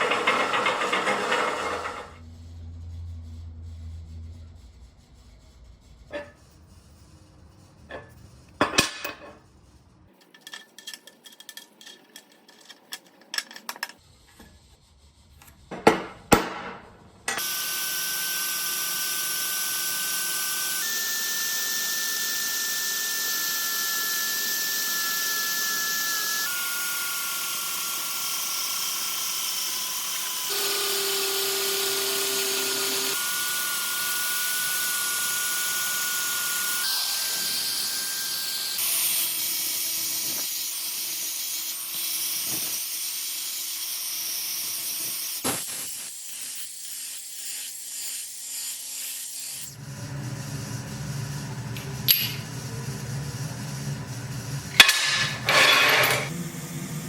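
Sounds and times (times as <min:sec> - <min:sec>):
metal knocks and clanks: 0:00.0 - 0:02.2
power tool running on steel: 0:00.0 - 0:02.2, 0:17.3 - 0:57.0.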